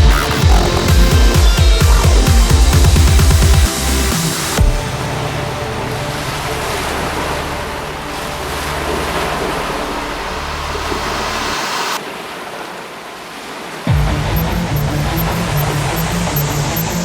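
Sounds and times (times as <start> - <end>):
heavy surf breaking: 0.2 - 17.0
wind: 3.7 - 17.0.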